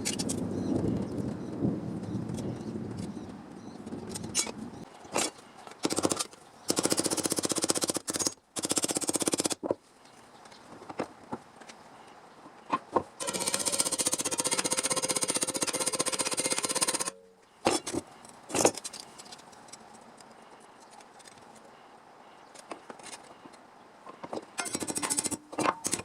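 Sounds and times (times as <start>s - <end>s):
fast-pulsing power tool: 13.2s - 17.1s.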